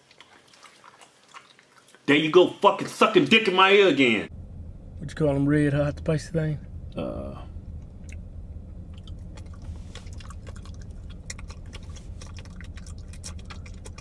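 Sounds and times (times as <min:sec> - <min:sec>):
man chewing and lip smacking: 0:00.0 - 0:02.1, 0:08.9 - 0:14.0
low steady hum: 0:04.0 - 0:14.0.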